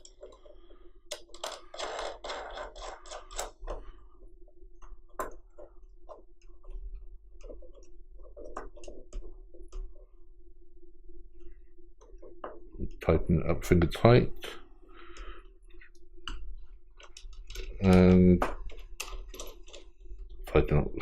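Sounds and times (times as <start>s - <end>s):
small metal parts clicking: 17.0s - 19.9s.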